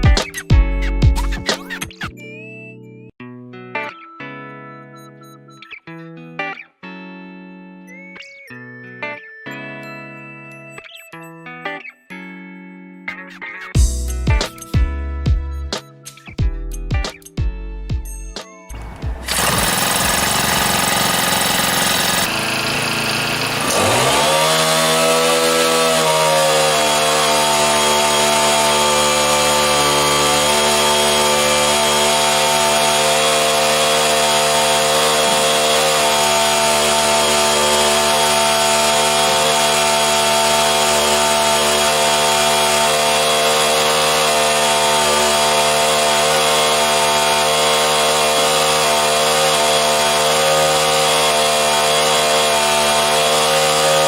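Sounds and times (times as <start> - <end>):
small petrol engine revving: 18.7 - 54.0.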